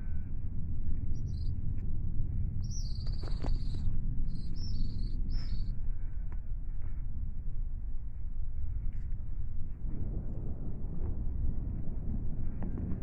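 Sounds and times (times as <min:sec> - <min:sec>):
steady low rumble: 0:00.0 - 0:13.0
bird chirping: 0:02.6 - 0:05.7.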